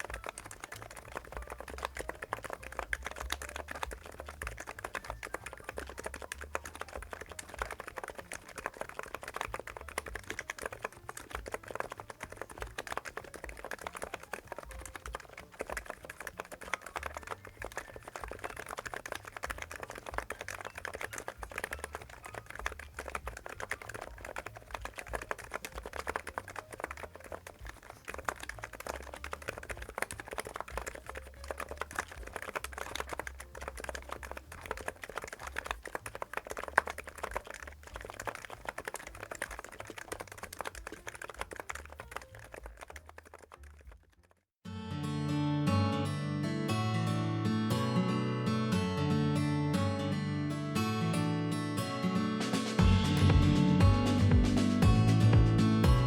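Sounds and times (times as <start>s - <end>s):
fast keyboard typing: 0.0s - 44.4s.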